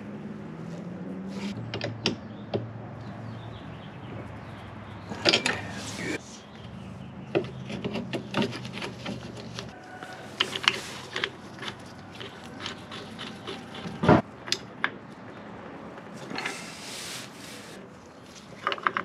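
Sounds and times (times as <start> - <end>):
metal parts clicking and scraping: 5.2 - 5.6, 7.4 - 14.6.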